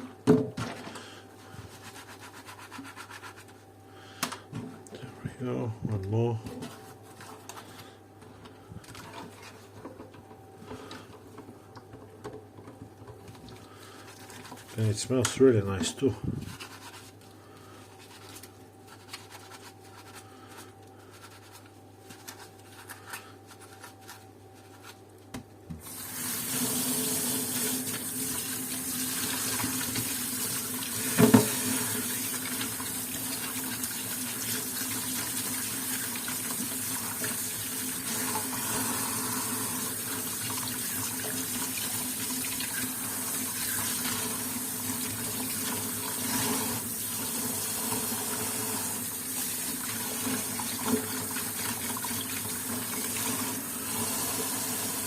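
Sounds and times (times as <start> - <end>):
faint rubbing and handling noises: 0.8 - 3.8, 6.4 - 8.0, 8.8 - 10.8, 13.3 - 25.3
tap water running into sink: 25.8 - 55.0.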